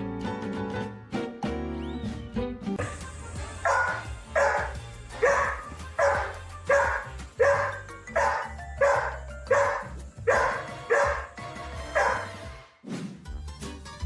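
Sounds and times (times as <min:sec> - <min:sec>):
background music: 0:00.0 - 0:14.0
dog barking: 0:03.5 - 0:12.5.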